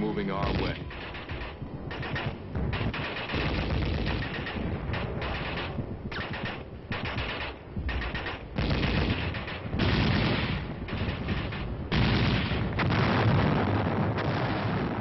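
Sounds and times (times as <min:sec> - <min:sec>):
machine-gun and rifle fire: 0:00.4 - 0:15.0.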